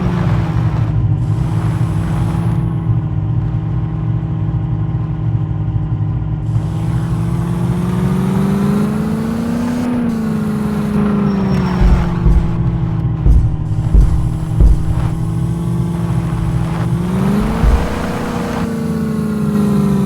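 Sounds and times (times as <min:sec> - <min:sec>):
jeep engine revving: 0:00.0 - 0:05.4, 0:06.3 - 0:20.0.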